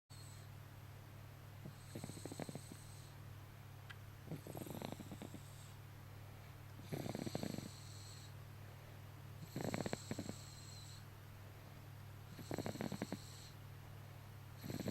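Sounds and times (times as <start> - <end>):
steady low hum: 0.1 - 14.9
baby snoring: 1.7 - 3.2, 4.3 - 5.8, 6.8 - 8.4, 9.4 - 11.0, 12.3 - 13.6, 14.6 - 14.9.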